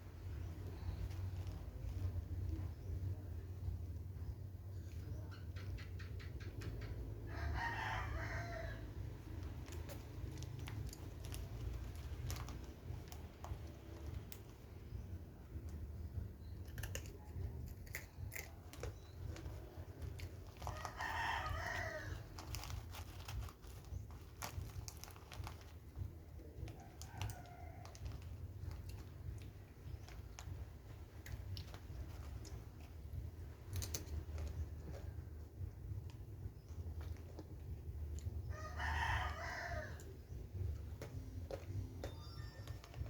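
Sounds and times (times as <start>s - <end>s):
rooster crowing: 7.3s - 9.0s, 20.7s - 22.2s, 38.5s - 40.1s.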